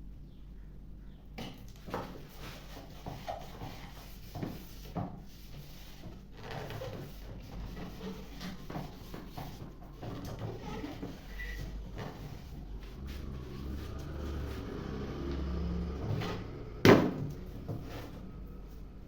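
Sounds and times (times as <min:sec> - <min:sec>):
wood knocking and rubbing on workbench: 0:01.9 - 0:14.7.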